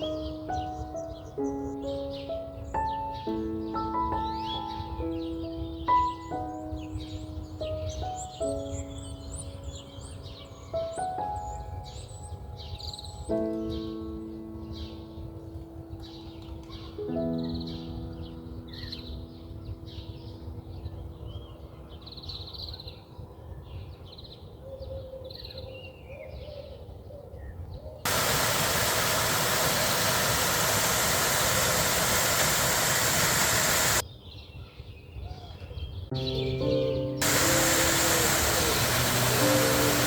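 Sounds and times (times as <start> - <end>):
birds calling: 0.0 - 15.0, 28.1 - 34.0, 35.4 - 40.0
rush of water: 28.1 - 34.0, 37.2 - 40.0.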